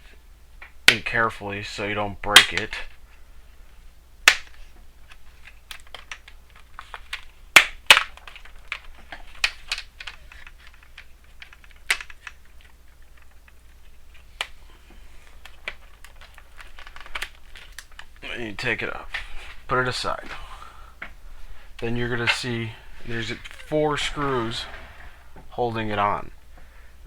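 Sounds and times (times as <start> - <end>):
plastic clips snapping loose: 4.2 - 13.6, 15.4 - 18.2.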